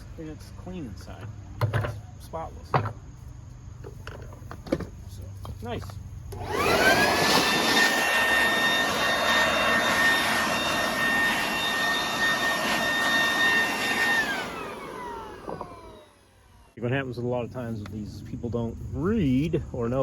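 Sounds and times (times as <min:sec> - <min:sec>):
shop vacuum motor whining: 0:06.3 - 0:16.8.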